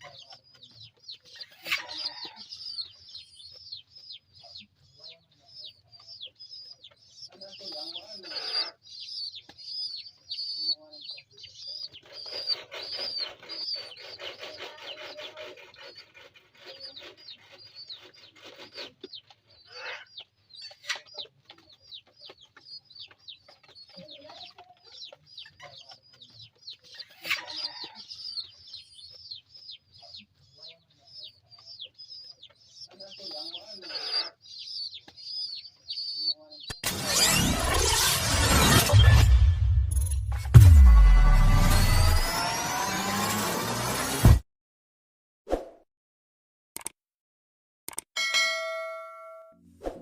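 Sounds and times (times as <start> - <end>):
pigeon squabs peeping: 0.0 - 38.1.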